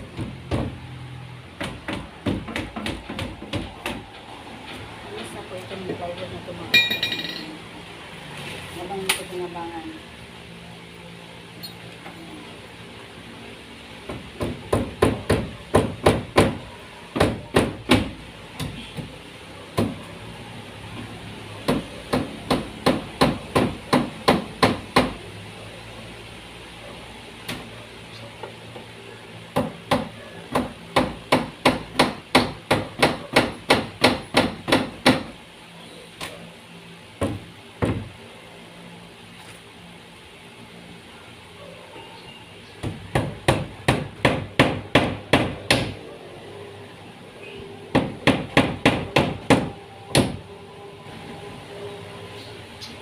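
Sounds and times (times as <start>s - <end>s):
hammer strikes on wood: 0.0s - 0.8s, 1.6s - 4.0s, 14.1s - 20.1s, 21.6s - 25.2s, 29.5s - 35.4s, 37.2s - 38.1s, 42.8s - 46.0s, 47.9s - 50.4s.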